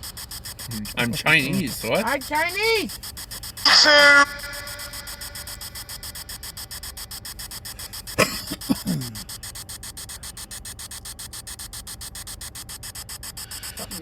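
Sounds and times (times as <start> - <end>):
radio broadcast fragments: 0.0 - 14.0
radio hiss with rapid clicks: 0.0 - 14.0.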